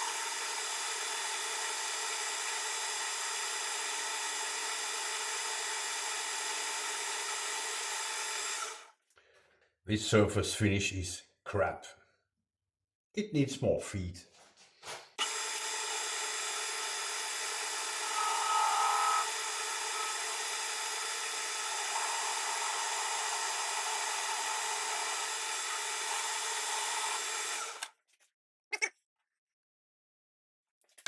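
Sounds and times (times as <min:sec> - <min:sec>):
metal lathe running: 0:15.2 - 0:27.9
cutting tool squeal: 0:17.7 - 0:20.4, 0:21.6 - 0:27.9.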